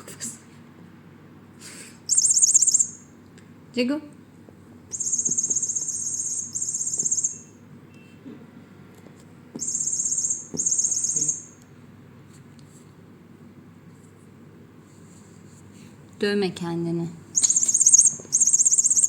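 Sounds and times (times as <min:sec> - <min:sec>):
electronic toy chirping: 0:02.1 - 0:03.2, 0:04.9 - 0:07.6, 0:09.6 - 0:11.6, 0:17.4 - 0:19.0.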